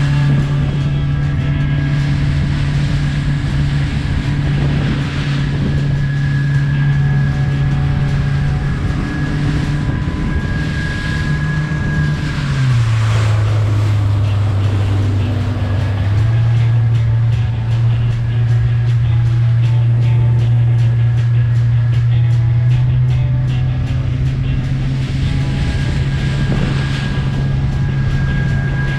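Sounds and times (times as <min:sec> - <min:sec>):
boat engine running: 0:00.0 - 0:28.9
water wash: 0:00.0 - 0:28.9
wind noise: 0:00.0 - 0:28.9.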